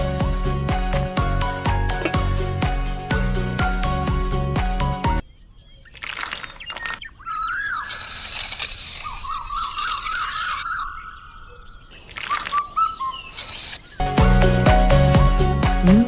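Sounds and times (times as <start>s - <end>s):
music: 0.0s - 5.2s, 14.0s - 16.0s
birds chirping: 0.0s - 14.5s.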